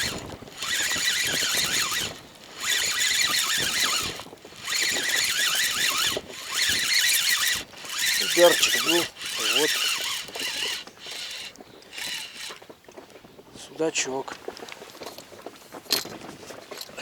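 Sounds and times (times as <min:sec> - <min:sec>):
spinning reel whining: 0:00.0 - 0:12.6.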